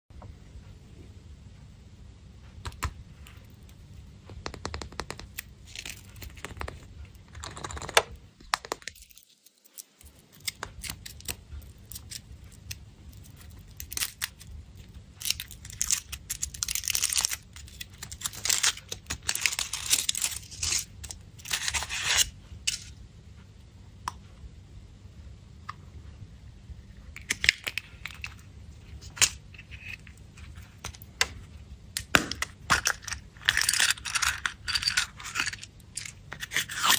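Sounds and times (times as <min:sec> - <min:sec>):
sharp clicks and taps: 0:04.3 - 0:05.5
foil wrappers tearing and crinkling: 0:08.8 - 0:12.2, 0:15.2 - 0:22.3, 0:32.7 - 0:36.9.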